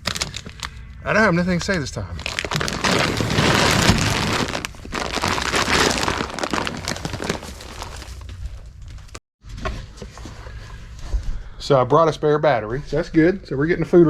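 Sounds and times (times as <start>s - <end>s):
plastic sack crinkling: 2.2s - 9.2s.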